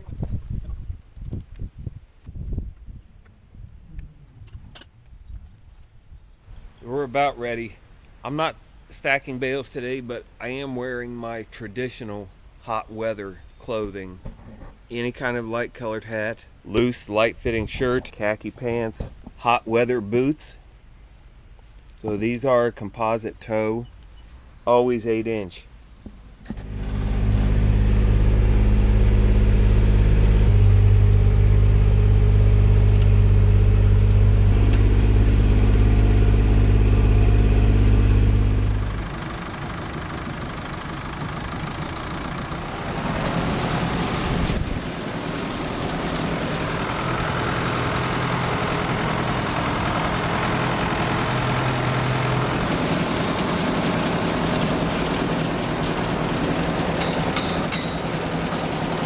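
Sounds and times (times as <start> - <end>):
rough mechanical running: 26.4 - 59.0
tractor diesel engine running: 26.4 - 59.0.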